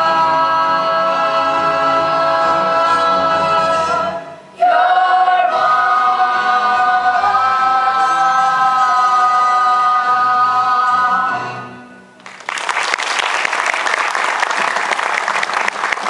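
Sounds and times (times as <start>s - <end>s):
cast singing in chorus: 0.0s - 11.8s.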